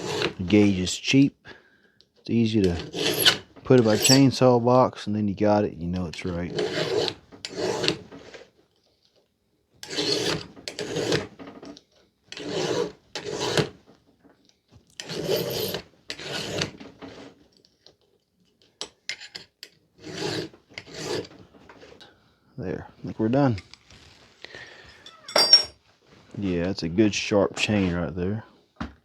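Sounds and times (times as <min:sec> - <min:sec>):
file rasping on chainsaw chain: 0:00.0 - 0:00.6, 0:02.6 - 0:04.3, 0:06.5 - 0:08.0, 0:09.8 - 0:11.3, 0:12.3 - 0:13.7, 0:15.0 - 0:16.8, 0:20.0 - 0:21.4.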